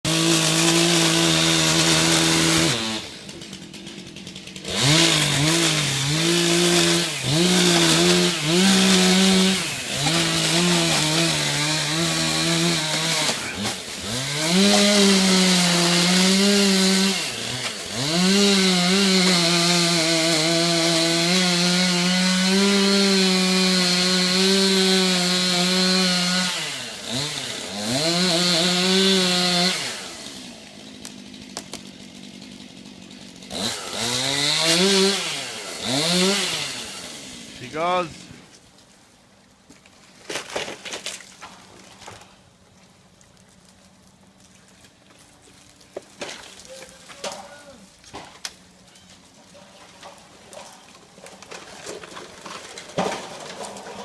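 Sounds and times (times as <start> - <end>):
chainsaw revving and cutting: 0.0 - 38.3.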